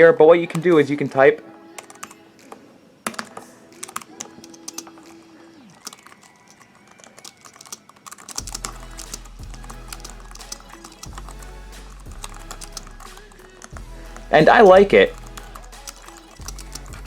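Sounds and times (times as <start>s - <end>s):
light keyboard key clicks: 5.8s - 9.3s.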